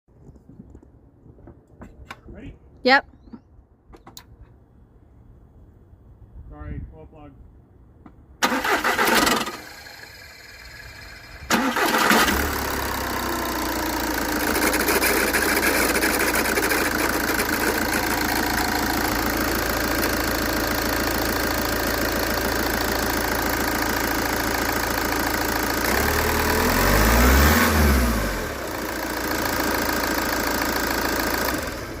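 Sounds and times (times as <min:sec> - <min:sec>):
diesel engine starting and idling: 0:08.4 - 0:32.0.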